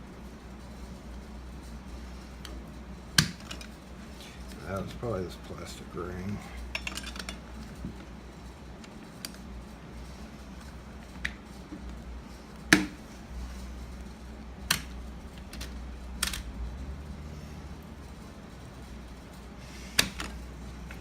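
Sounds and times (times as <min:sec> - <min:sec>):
low steady hum: 0:00.0 - 0:21.0
small lock parts clicking: 0:06.7 - 0:07.4, 0:14.6 - 0:16.5.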